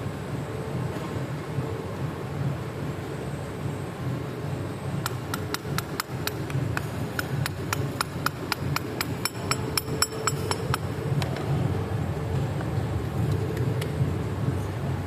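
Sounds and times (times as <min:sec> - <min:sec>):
steady low rumble: 0:00.0 - 0:15.0
metal-on-metal tapping: 0:05.0 - 0:11.4.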